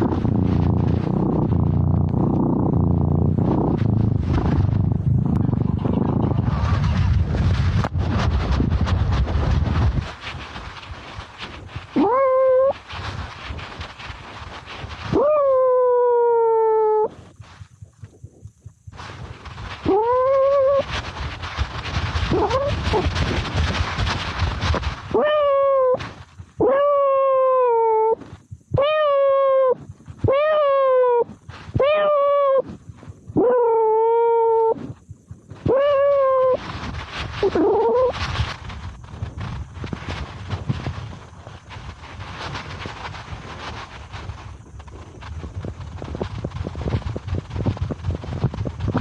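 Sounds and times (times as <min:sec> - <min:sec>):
microphone rubbing on fur: 0:00.0 - 0:49.0
camera rustling and scuffing: 0:03.3 - 0:16.0, 0:17.0 - 0:26.8, 0:34.5 - 0:49.0
cat meowing: 0:12.0 - 0:12.8, 0:25.2 - 0:26.0, 0:28.8 - 0:32.7, 0:35.7 - 0:36.6.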